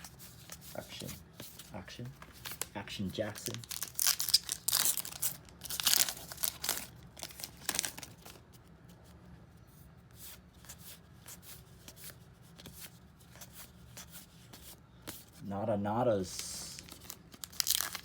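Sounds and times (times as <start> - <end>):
faint wrapper rustling: 1.7 - 8.7, 16.4 - 18.0
wrapper tearing and crinkling: 3.3 - 8.3, 16.8 - 18.0.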